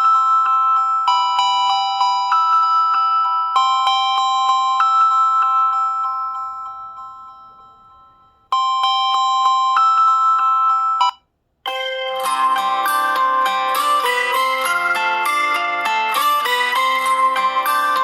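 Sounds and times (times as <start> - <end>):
chiming ringtone melody: 0.0 - 18.0
plucked-string ringtone: 11.7 - 18.0.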